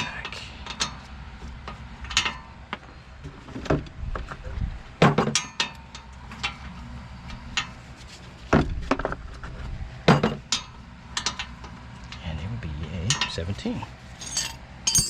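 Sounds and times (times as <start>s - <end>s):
metal tools clinking on bolts: 13.0s - 13.4s, 14.2s - 15.0s.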